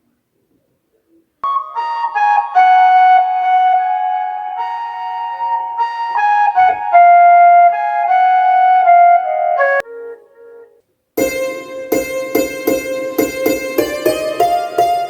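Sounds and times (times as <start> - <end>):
electronic keyboard melody: 1.4 - 15.0
rhythmic keyboard pulse: 1.4 - 15.0.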